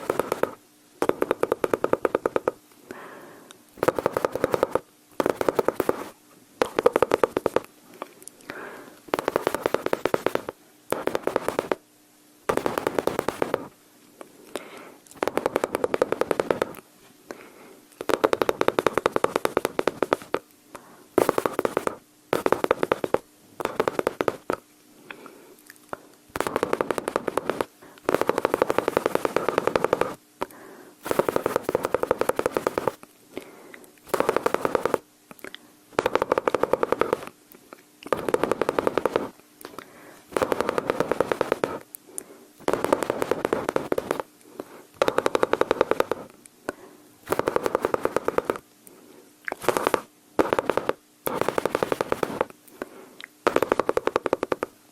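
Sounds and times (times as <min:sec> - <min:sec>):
mouth imitating machine-gun fire: 0:00.0 - 0:02.6, 0:03.8 - 0:07.7, 0:08.5 - 0:11.8, 0:12.5 - 0:13.7, 0:14.6 - 0:16.8, 0:18.0 - 0:20.4, 0:21.2 - 0:24.6, 0:26.3 - 0:33.0, 0:34.1 - 0:35.1, 0:35.9 - 0:37.3, 0:38.1 - 0:39.4, 0:40.3 - 0:41.8, 0:42.6 - 0:44.3, 0:45.0 - 0:46.3, 0:47.2 - 0:48.6, 0:49.5 - 0:52.5, 0:53.4 - 0:54.7.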